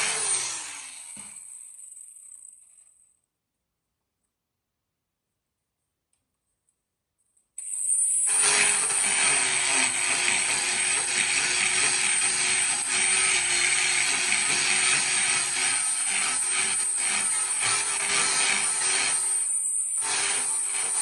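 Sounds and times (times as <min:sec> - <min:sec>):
power tool whining on metal: 0:00.0 - 0:02.4, 0:07.6 - 0:21.0.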